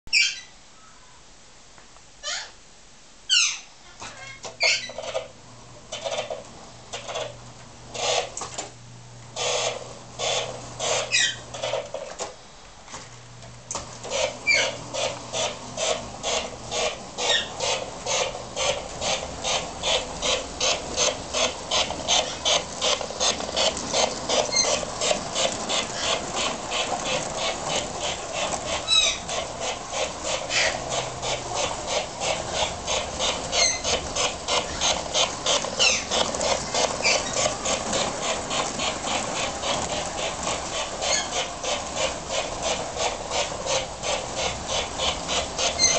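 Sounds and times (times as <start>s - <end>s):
model steam locomotive chuffing: 14.0s - 45.9s.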